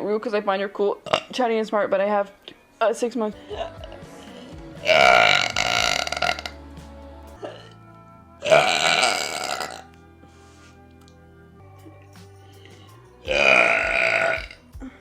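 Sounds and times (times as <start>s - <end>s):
quiet background music: 0.0s - 15.0s
woman burping loudly: 1.0s - 1.4s, 3.4s - 6.6s, 8.4s - 9.9s, 13.3s - 15.0s.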